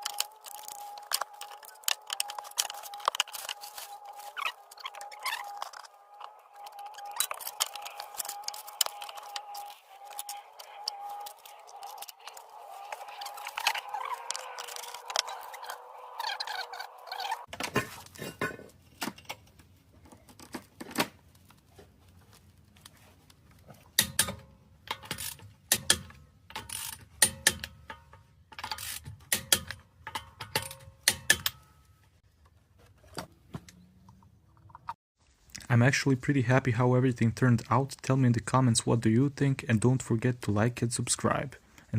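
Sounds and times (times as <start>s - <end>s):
hand tools clicking on metal: 0.0s - 16.6s.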